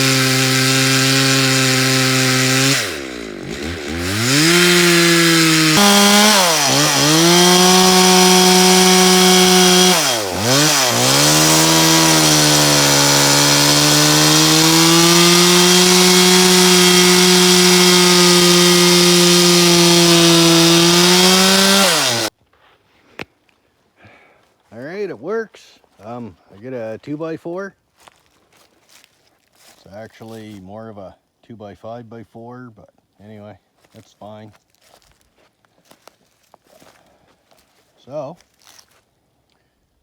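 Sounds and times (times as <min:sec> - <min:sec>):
chainsaw cutting log: 0:00.0 - 0:22.3.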